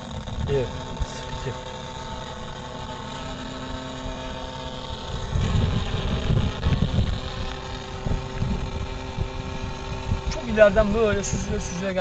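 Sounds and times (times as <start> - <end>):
model airplane motor and propeller: 0.0 - 12.0
wind buffeting microphone: 3.8 - 12.0.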